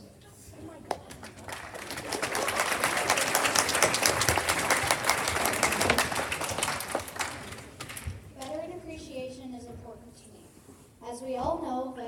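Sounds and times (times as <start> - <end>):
audience applauding: 1.2 - 8.2.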